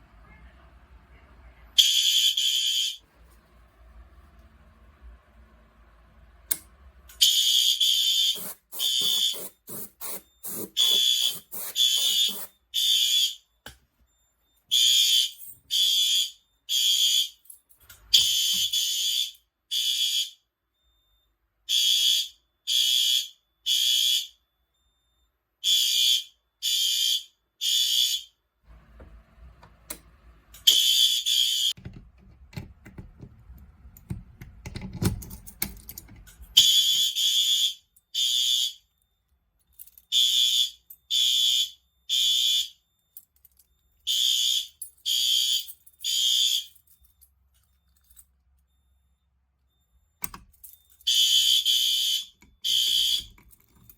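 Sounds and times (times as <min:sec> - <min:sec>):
fire alarm horn blasts: 0:01.8 - 0:03.1, 0:07.2 - 0:13.5, 0:14.4 - 0:17.5, 0:18.1 - 0:28.4, 0:30.6 - 0:31.8, 0:36.6 - 0:38.9, 0:40.1 - 0:42.9, 0:44.1 - 0:46.8, 0:51.1 - 0:53.4.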